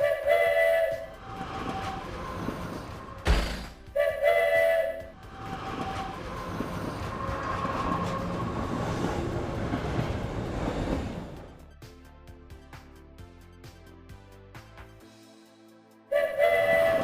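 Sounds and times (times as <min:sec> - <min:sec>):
train horn blasts: 0:00.0 - 0:03.2, 0:03.9 - 0:06.4
train rumbling pulling away: 0:00.0 - 0:11.7
sudden thud: 0:03.2 - 0:03.8.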